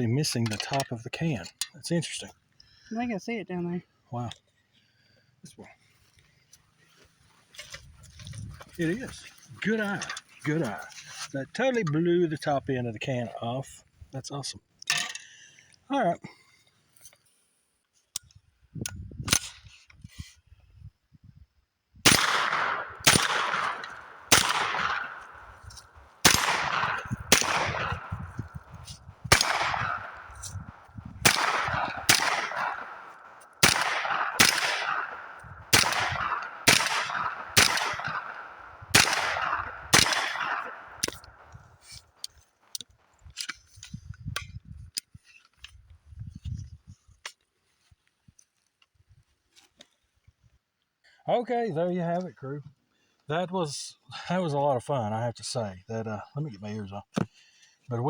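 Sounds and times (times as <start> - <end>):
gunshots with ringing echo: 22.1 - 41.6.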